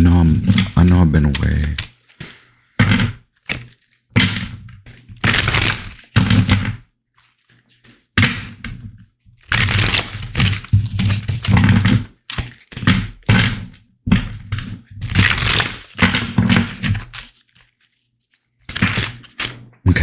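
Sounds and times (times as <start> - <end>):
cards shuffling on a table: 0.0 - 8.1, 9.6 - 13.6, 14.5 - 20.0.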